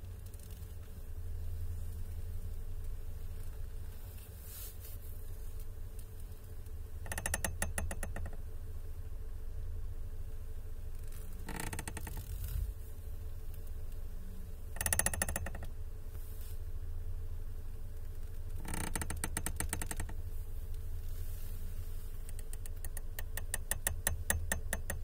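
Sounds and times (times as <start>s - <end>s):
low steady hum: 0.0s - 25.0s
steering wheel creaking: 11.0s - 12.8s, 14.8s - 15.7s, 18.2s - 20.2s, 22.2s - 25.0s.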